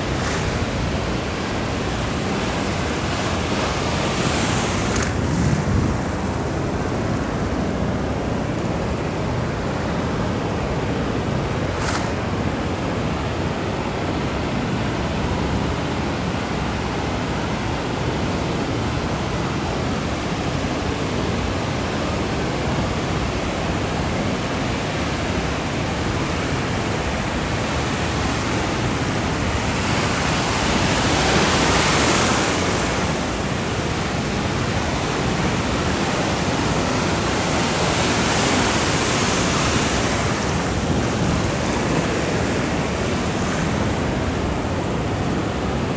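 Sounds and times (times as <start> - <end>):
waves washing in: 0.0 - 45.9.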